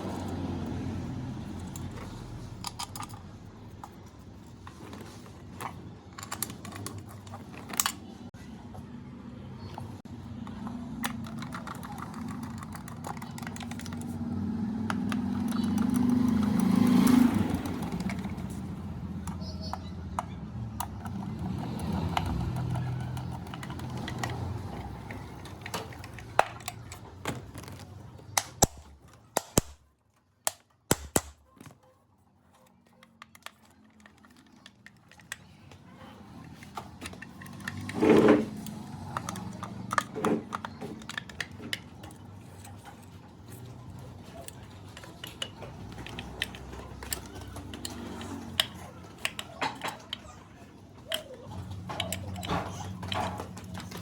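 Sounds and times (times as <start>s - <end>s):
fan parts clicking and rattling: 0.0s - 8.9s, 9.6s - 54.0s.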